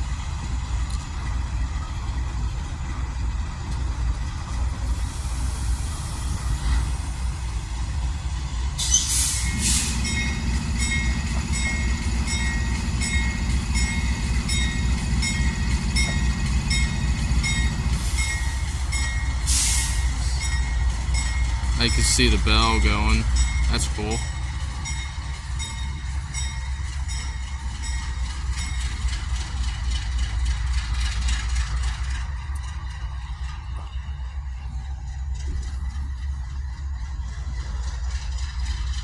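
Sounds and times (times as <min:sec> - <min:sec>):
train rumbling past: 0:00.0 - 0:39.0
locomotive bell ringing: 0:09.4 - 0:29.7.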